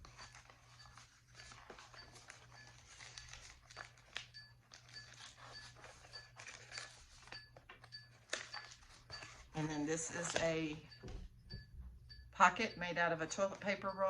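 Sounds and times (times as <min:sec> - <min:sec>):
paper rustling: 0:00.0 - 0:10.8.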